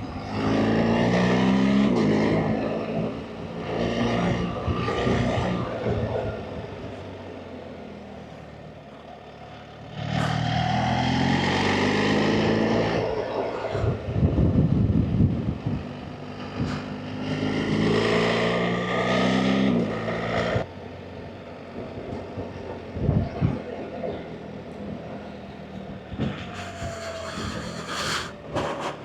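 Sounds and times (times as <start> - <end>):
motorcycle engine accelerating: 0.0 - 7.2, 9.8 - 20.7.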